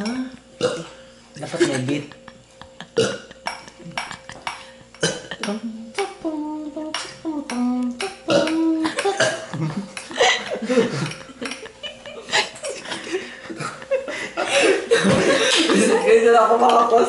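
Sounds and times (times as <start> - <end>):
long low burps: 0.6 - 1.0, 2.8 - 4.0, 5.0 - 5.8, 8.0 - 9.7
taps on dishes: 3.4 - 5.6, 6.9 - 9.2
voices and giggling: 8.6 - 17.0.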